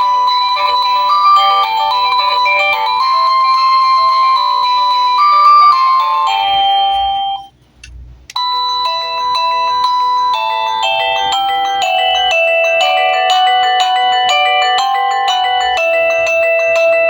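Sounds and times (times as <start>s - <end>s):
doorbell chime melody: 0.0s - 7.5s, 8.4s - 17.0s.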